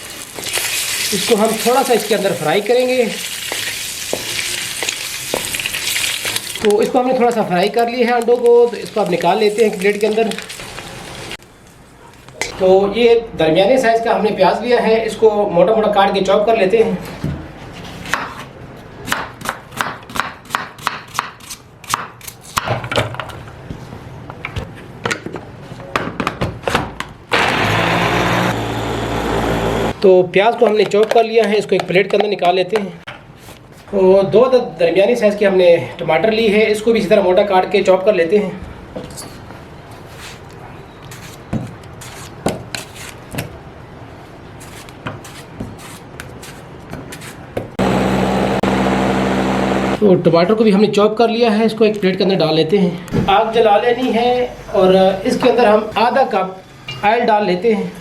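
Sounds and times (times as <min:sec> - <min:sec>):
knife chopping on cutting board: 0:19.0 - 0:22.7.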